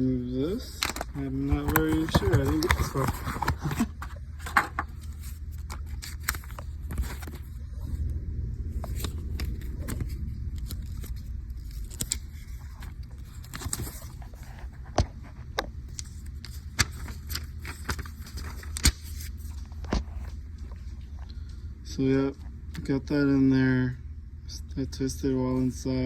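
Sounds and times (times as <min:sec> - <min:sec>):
low rumble: 0:00.7 - 0:14.9.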